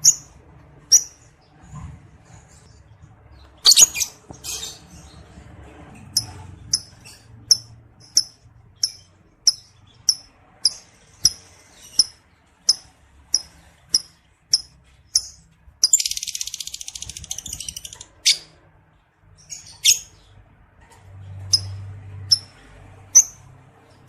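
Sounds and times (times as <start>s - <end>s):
lovebird chattering: 0.0s - 0.3s, 0.9s - 1.2s, 3.6s - 4.8s, 6.2s - 18.5s
lovebird chirps: 0.0s - 0.3s, 0.9s - 1.2s, 3.6s - 4.8s, 6.2s - 18.5s.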